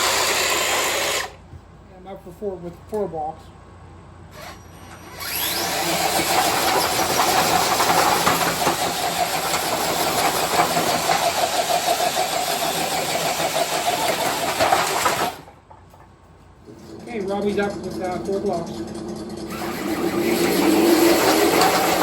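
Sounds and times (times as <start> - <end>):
toy truck motor whining: 0.0 - 1.4, 4.3 - 15.5, 19.0 - 22.0
tires scrabbling on floor: 12.8 - 22.0.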